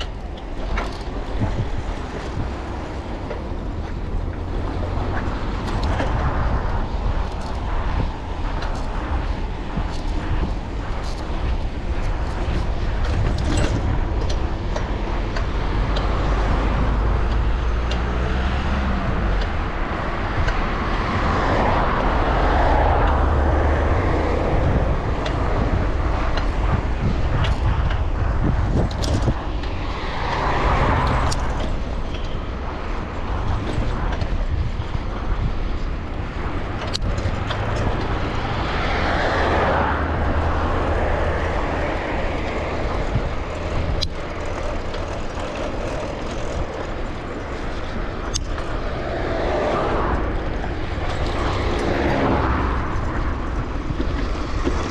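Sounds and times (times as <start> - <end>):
wind buffeting microphone: 0.0 - 54.9.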